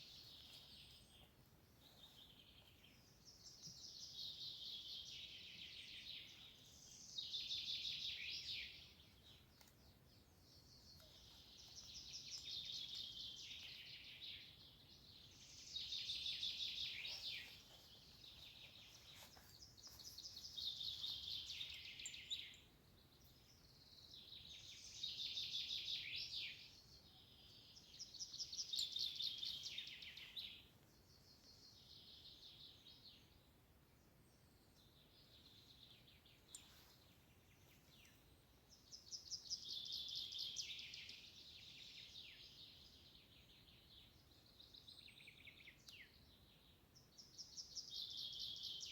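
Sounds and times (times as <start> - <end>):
faint outdoor background hiss: 0.0 - 48.9.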